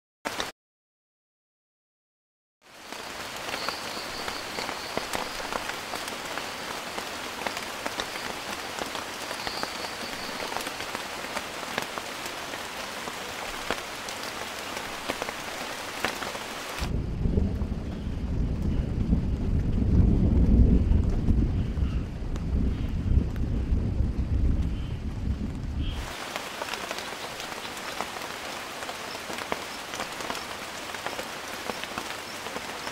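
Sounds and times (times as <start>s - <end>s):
heavy rain: 0.3s - 0.5s, 2.6s - 32.9s
loud deep rumbling: 16.9s - 25.9s.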